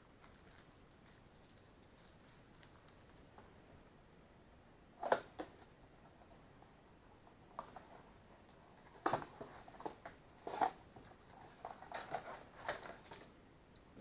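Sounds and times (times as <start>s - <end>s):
box and plastic wrapping handled: 0.2s - 3.4s, 7.4s - 13.3s.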